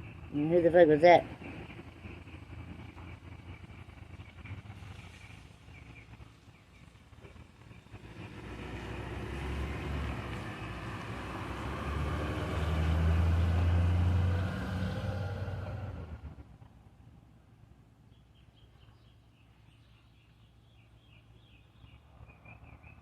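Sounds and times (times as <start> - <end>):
vehicle passing by: 0.0 - 17.0
tyre and road noise: 0.0 - 23.0.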